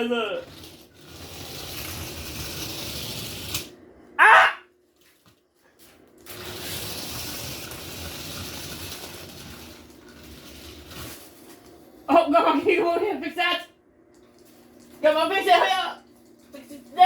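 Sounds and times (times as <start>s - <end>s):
toy motor whirring hiss: 0.0s - 3.7s
man shouting: 4.2s - 4.6s.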